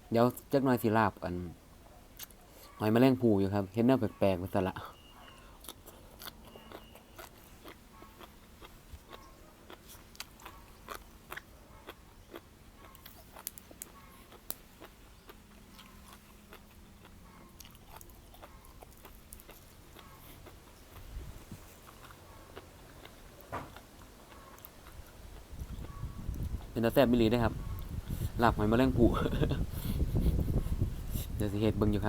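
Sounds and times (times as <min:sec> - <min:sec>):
person chewing crunchy food: 0:05.3 - 0:26.8.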